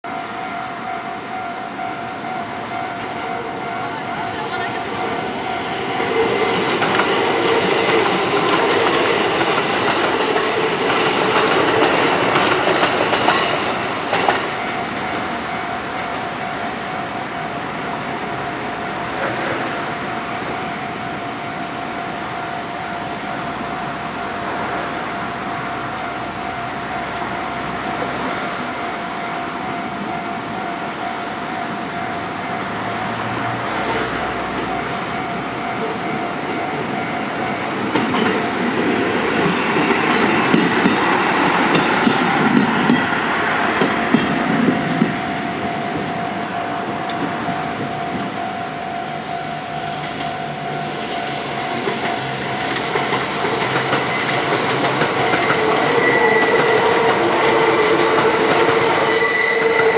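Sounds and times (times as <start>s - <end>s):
crossing warning bell ringing: 0.0s - 59.9s
train wheels clattering on rails: 2.4s - 16.2s, 33.0s - 48.6s, 49.7s - 59.9s.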